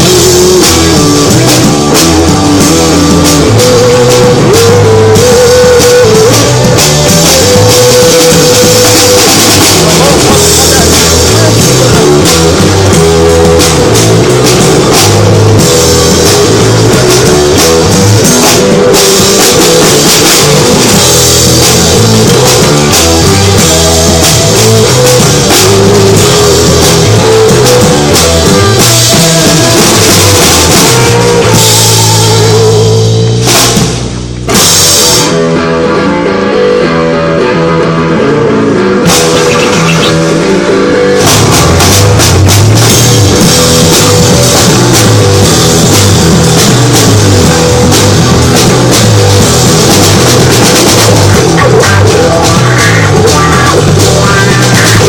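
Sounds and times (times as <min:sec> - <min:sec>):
loud rock music: 0:00.0 - 0:55.0.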